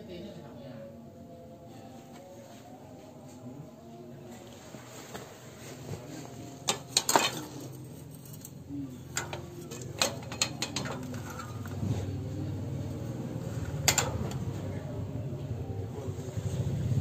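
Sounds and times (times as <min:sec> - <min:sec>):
low steady rumble: 0:04.7 - 0:17.0
metal parts clinking and clanking: 0:06.6 - 0:12.0, 0:13.0 - 0:14.6.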